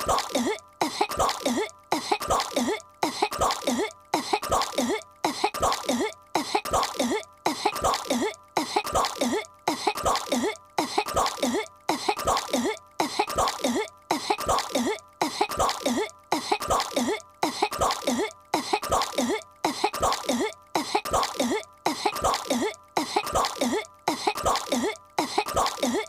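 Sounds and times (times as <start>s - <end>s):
cartoon girl coughing and hacking: 0.0s - 26.0s.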